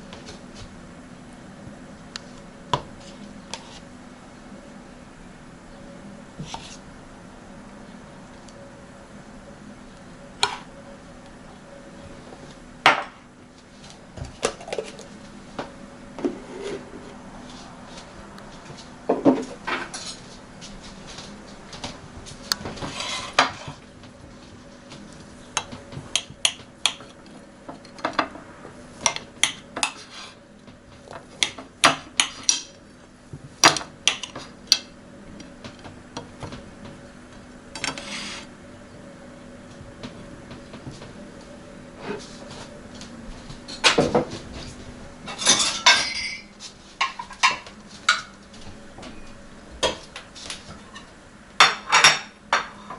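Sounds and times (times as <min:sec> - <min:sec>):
faint steady hum: 0:00.0 - 0:52.9
cutlery clinking against dishes: 0:45.3 - 0:48.3.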